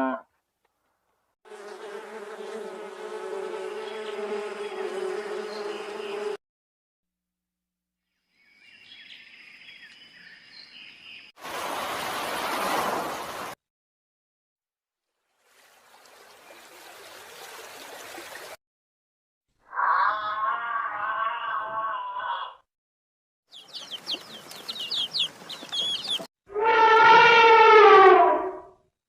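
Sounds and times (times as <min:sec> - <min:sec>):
bee buzzing: 0:01.5 - 0:06.4
high chirps: 0:23.5 - 0:26.3.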